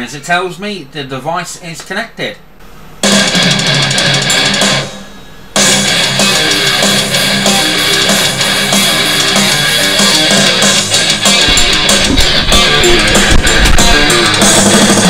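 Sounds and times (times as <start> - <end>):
rock music from speaker: 3.0 - 15.0.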